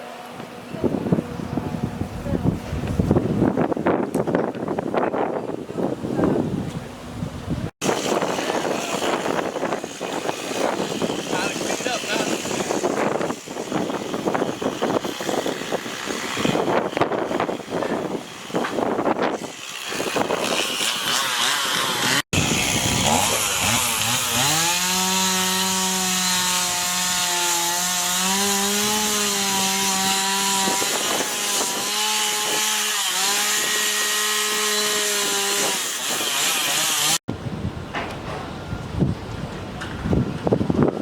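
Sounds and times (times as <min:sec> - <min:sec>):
chainsaw revving: 0:07.8 - 0:16.9, 0:19.3 - 0:37.2.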